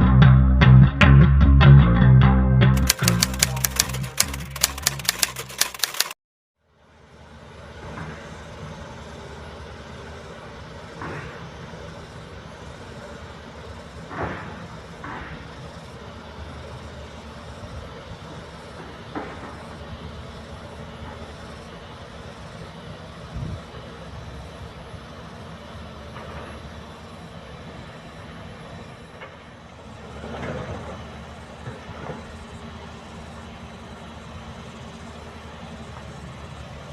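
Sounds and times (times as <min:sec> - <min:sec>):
construction machinery engine: 0:02.8 - 0:06.2, 0:06.8 - 0:36.9
intro music with ticking beat: 0:02.8 - 0:06.2.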